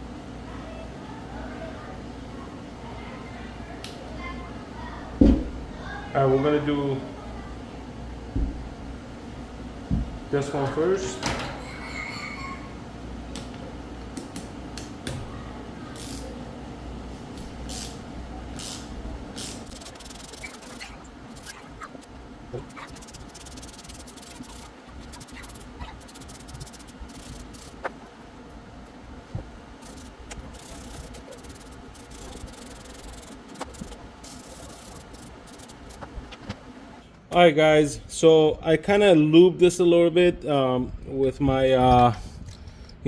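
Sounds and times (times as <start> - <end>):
steady low hum: 12.6 - 43.0
aerosol spray hissing: 18.6 - 28.0, 29.8 - 36.2
small parts clicking: 19.4 - 27.9, 29.8 - 36.1.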